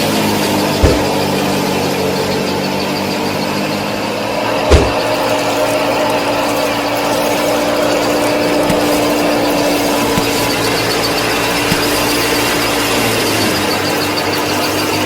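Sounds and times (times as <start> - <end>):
small machinery humming whine: 0.0 - 15.0
low thumps: 0.8 - 1.4, 4.7 - 5.2.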